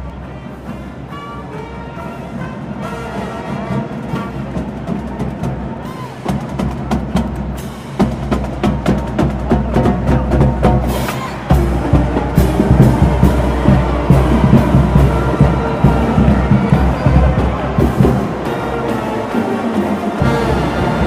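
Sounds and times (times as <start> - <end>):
sustained horn tones: 0.0 - 4.8, 11.3 - 21.0
drums and percussion strikes: 3.6 - 21.0.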